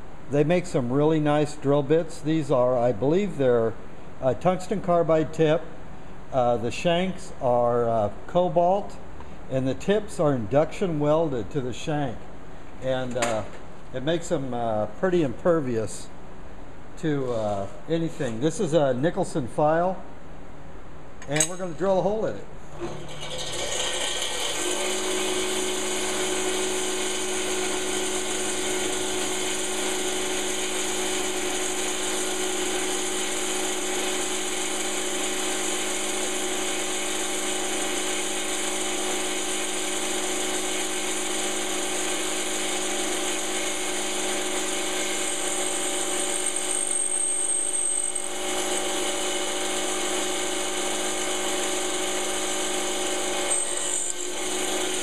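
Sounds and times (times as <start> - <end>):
power drill grinding into steel: 53.0 - 55.0.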